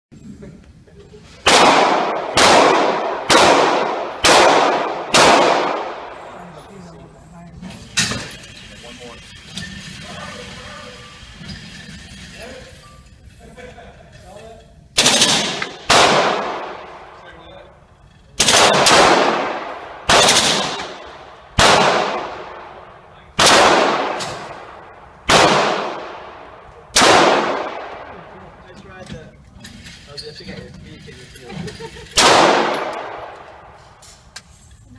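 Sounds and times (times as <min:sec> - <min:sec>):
pistol shots with echo: 0:01.4 - 0:06.3, 0:15.0 - 0:17.4, 0:18.4 - 0:28.3, 0:32.2 - 0:33.8.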